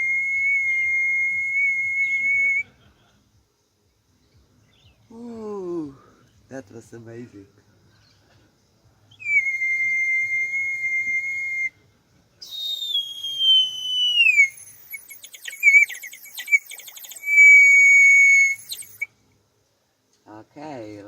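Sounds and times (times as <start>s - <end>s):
water whistle tones and warbling: 12.4s - 19.1s.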